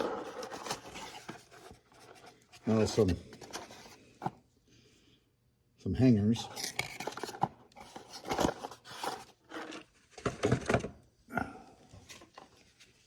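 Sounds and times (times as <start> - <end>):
rummaging in a toolbox drawer: 0.0 - 4.4, 6.4 - 10.9.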